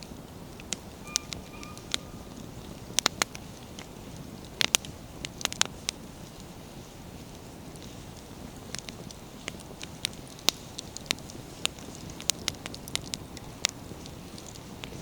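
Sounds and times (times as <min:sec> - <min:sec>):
burning wood crackling and popping: 0:03.7 - 0:15.0.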